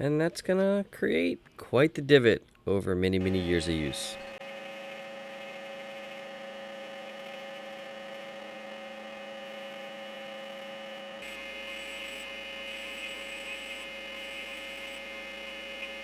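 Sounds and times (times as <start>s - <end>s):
belt grinder humming: 3.2s - 16.0s.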